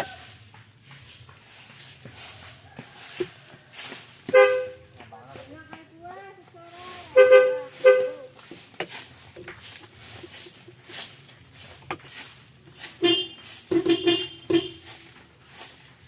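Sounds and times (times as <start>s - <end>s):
truck horn toots: 4.3s - 4.8s, 7.1s - 8.3s, 13.0s - 15.0s.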